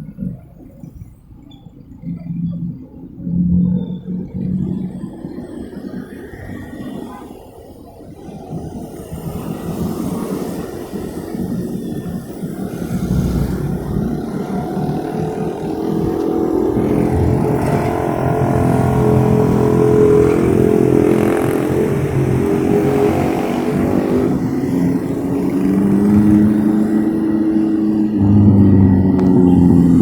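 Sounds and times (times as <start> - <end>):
passing cars and motorcycles: 0.0 - 30.0
approaching vehicle engine tone: 10.1 - 30.0.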